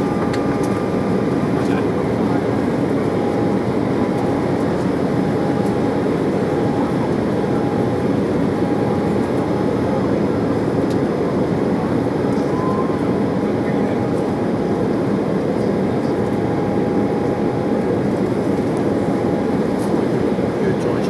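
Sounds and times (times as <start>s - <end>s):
jet engine and airflow rush: 16.5s - 21.0s.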